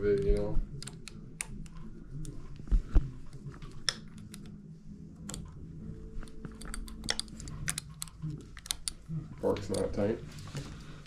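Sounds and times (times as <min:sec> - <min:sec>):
tools and bike parts clicking: 0:06.4 - 0:10.1.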